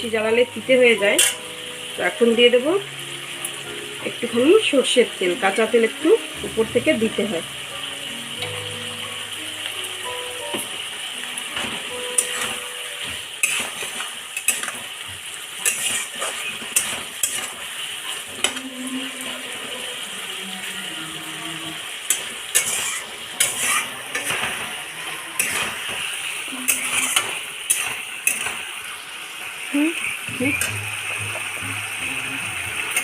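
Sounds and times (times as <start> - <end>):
curry sizzling: 0.0 - 33.0
spatula scraping a pan: 1.0 - 1.4, 12.2 - 18.7, 22.0 - 24.7, 25.4 - 28.7.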